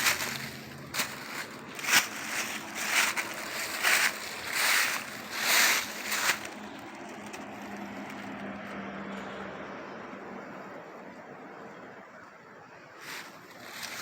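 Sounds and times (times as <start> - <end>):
footsteps crunching dry leaves: 0.0 - 8.9, 13.0 - 14.0.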